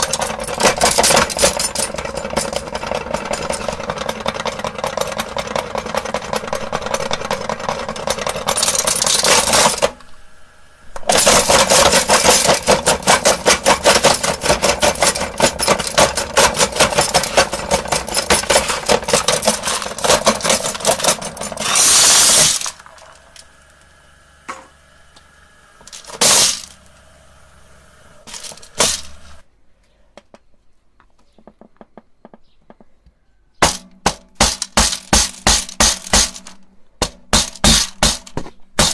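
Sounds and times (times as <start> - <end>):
marbles rattling: 0.0 - 9.9, 11.0 - 23.5, 25.9 - 26.8, 28.2 - 29.4
meat grinder motor running: 0.0 - 29.4.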